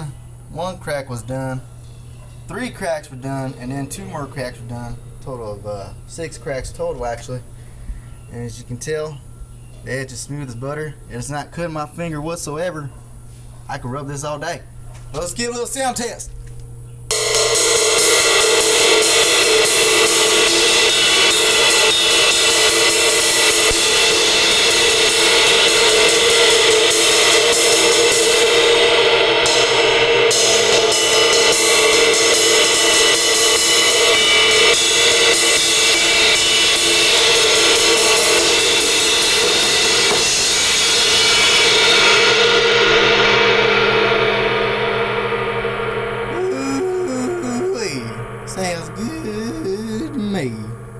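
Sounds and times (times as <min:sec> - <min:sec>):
cymbal ringing out: 0:17.1 - 0:50.9.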